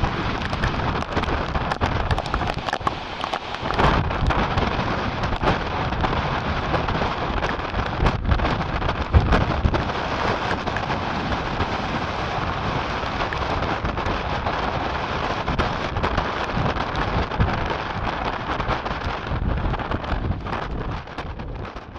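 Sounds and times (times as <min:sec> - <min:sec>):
rain: 0:00.0 - 0:21.9
waves: 0:00.0 - 0:21.9
wind buffeting microphone: 0:00.0 - 0:21.9
wind rushing: 0:00.0 - 0:21.9.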